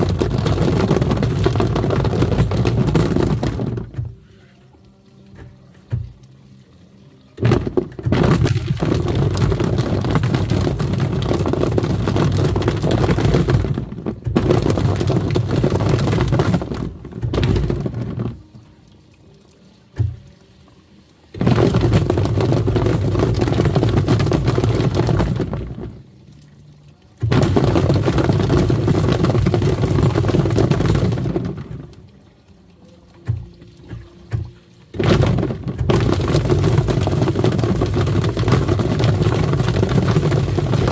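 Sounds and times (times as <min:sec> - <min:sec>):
washing machine churning water: 0:00.0 - 0:40.9.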